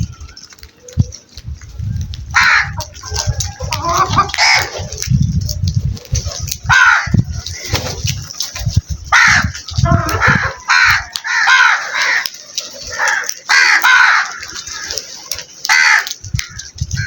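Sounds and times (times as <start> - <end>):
low rumbling: 1.0 - 11.1
crows cawing: 2.3 - 3.0, 3.7 - 4.8, 6.7 - 7.7, 9.1 - 17.0.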